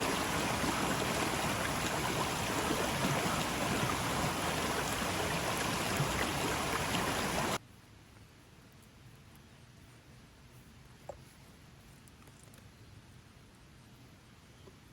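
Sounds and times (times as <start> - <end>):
running water rushing: 0.0 - 7.6.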